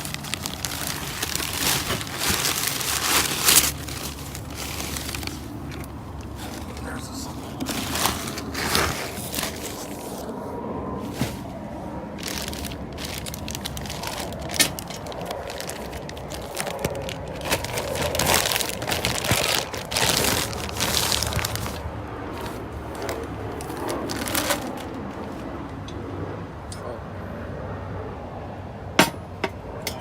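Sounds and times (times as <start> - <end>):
packaging crinkling: 0.0 - 10.4, 12.2 - 25.3.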